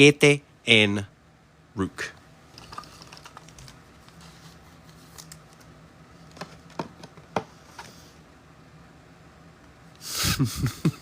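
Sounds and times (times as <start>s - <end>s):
cards rustling and sliding: 2.5s - 8.2s.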